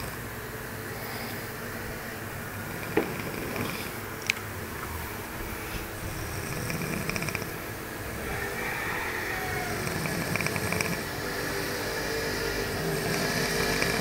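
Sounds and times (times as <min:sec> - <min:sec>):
person snoring: 0:06.2 - 0:07.5, 0:08.3 - 0:11.1, 0:12.3 - 0:14.0.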